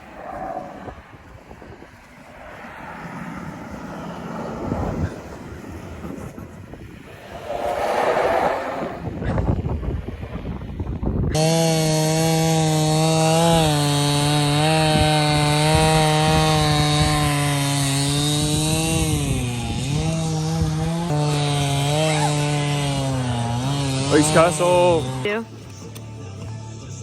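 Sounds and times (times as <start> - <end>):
small gas engine running: 11.3 - 25.4.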